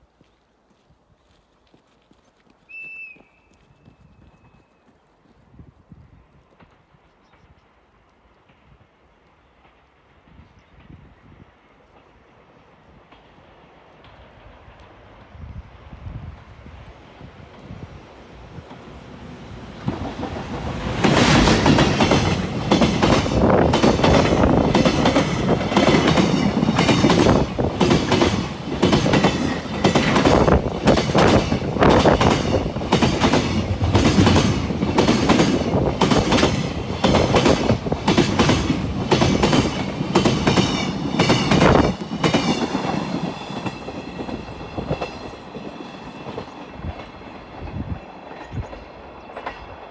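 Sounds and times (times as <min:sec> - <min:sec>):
train wheels clattering over rails: 0:18.4 - 0:49.9.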